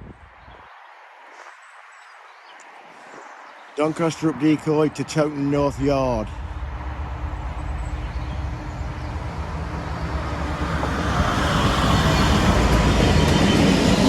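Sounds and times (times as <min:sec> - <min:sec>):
train wheels rumbling: 0:05.5 - 0:14.0
locomotive engine: 0:05.6 - 0:14.0.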